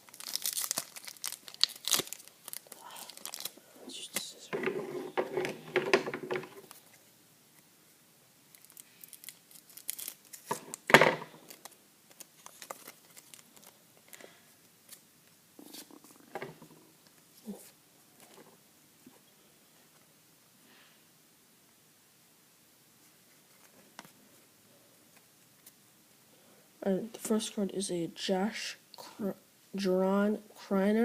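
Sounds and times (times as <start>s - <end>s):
wrapper crinkling: 0.0s - 4.5s, 8.5s - 14.2s
cards shuffling: 8.6s - 14.2s.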